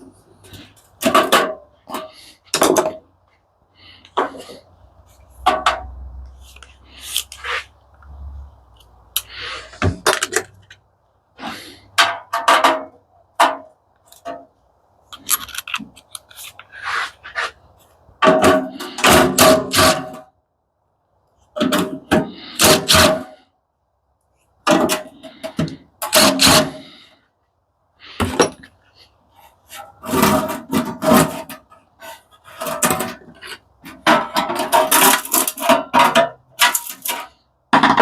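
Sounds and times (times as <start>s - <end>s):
metal parts clanking and rattling: 9.7s - 10.8s, 15.2s - 17.6s, 24.7s - 27.0s, 28.2s - 28.8s, 29.7s - 38.0s.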